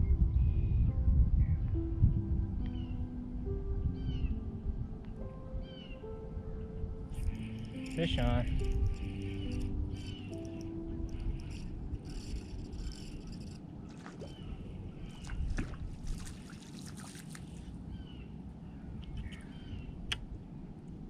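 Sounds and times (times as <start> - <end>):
low wind rumble: 0.0 - 21.0
sharp clicks: 7.2 - 13.6
water sloshing and splashing: 13.6 - 17.8.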